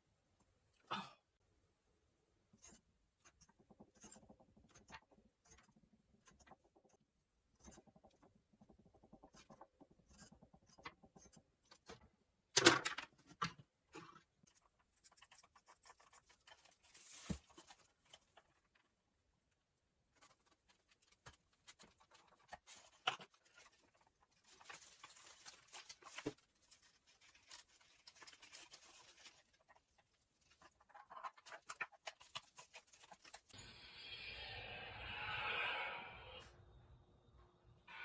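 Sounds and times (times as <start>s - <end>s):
small clicks and rustles: 12.8s - 33.6s.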